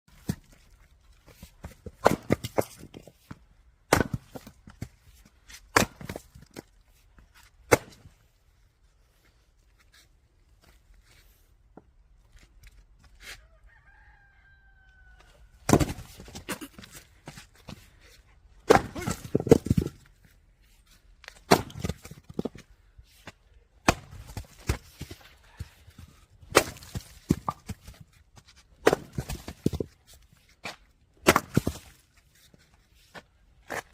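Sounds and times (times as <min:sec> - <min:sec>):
axe blows splitting firewood: 0:01.6 - 0:03.1, 0:03.8 - 0:06.6, 0:07.6 - 0:08.2, 0:15.7 - 0:17.0, 0:18.6 - 0:20.1, 0:21.3 - 0:22.6, 0:23.8 - 0:25.3, 0:26.0 - 0:28.0, 0:28.7 - 0:30.0, 0:30.6 - 0:32.0.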